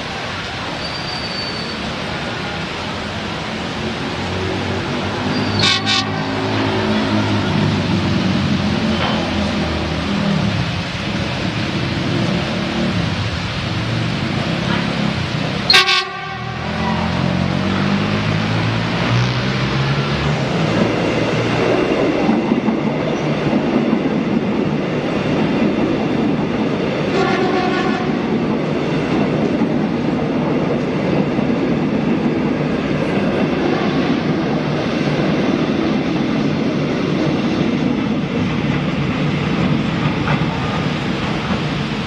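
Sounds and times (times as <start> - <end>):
train wheels rumbling on track: 0.0 - 42.0
heavy rain hissing: 6.2 - 20.8.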